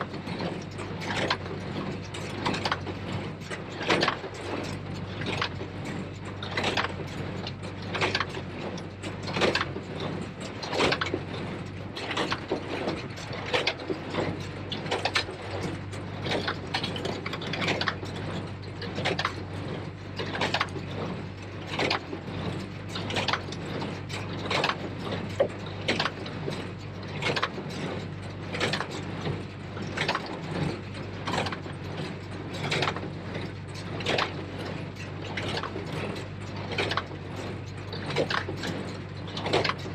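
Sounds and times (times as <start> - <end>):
baler clanking and rattling: 0.0 - 39.9
tractor engine drone: 0.0 - 39.9.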